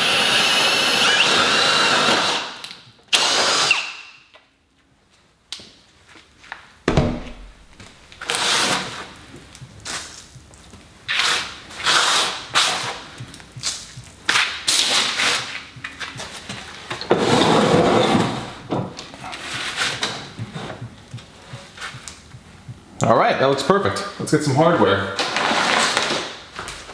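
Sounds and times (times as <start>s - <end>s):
objects scraping on workbench: 16.9s - 20.8s, 25.2s - 26.3s.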